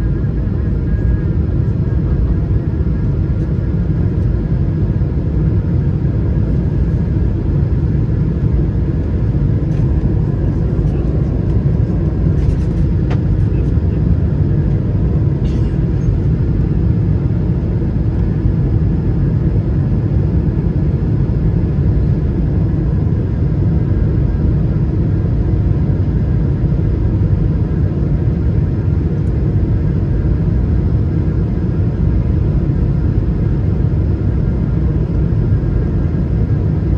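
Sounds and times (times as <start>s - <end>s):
jet engines rumbling: 0.0s - 25.1s.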